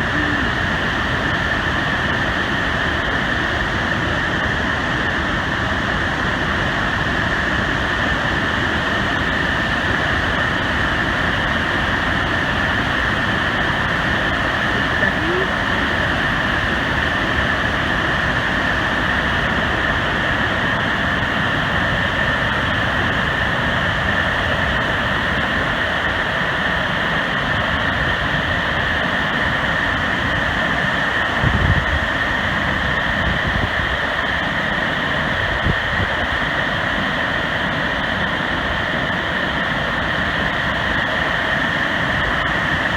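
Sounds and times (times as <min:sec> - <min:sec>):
waterfall roaring: 0:00.0 - 0:27.9.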